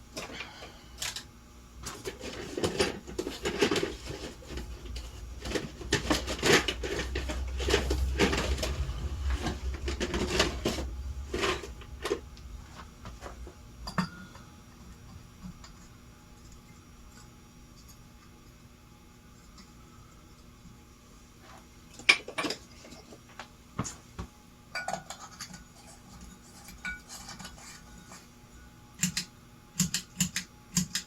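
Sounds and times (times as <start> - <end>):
low hum: 4.2 - 17.2.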